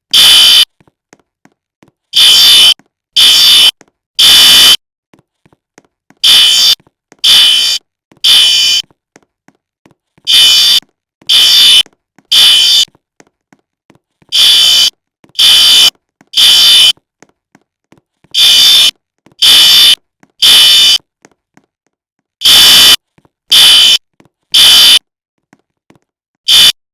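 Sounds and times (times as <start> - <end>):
fire alarm buzzing beeps: 0.1 - 0.7, 2.2 - 4.8, 6.2 - 8.8, 10.3 - 12.9, 14.4 - 16.9, 18.4 - 21.0, 22.4 - 24.0, 24.6 - 25.0, 26.5 - 26.8.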